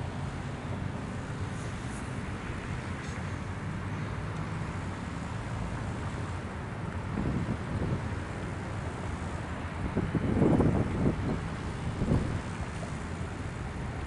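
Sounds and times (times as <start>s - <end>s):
low outdoor rumble: 0.0s - 14.0s
wind buffeting microphone: 7.0s - 8.7s, 9.5s - 14.0s.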